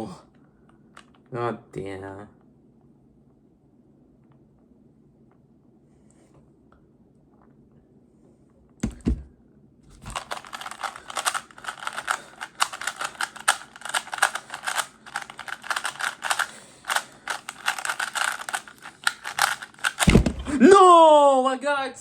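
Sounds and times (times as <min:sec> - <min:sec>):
puzzle cube plastic clicking: 0:10.0 - 0:20.5
low thumps: 0:20.0 - 0:20.6.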